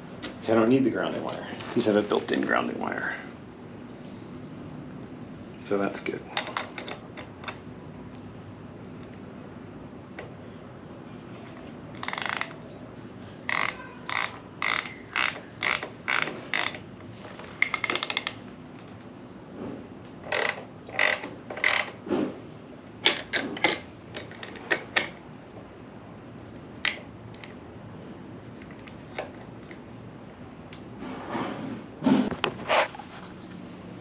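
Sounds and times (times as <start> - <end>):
socket ratchet clicking: 12.0 - 12.8, 13.4 - 16.8, 17.6 - 18.4, 20.3 - 22.0.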